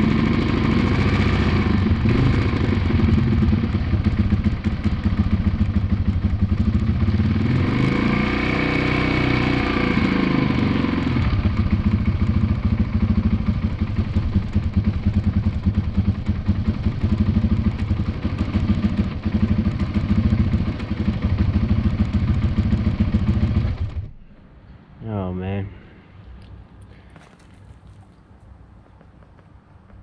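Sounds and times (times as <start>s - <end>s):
motorcycle engine idling: 0.0s - 7.9s, 9.0s - 24.2s.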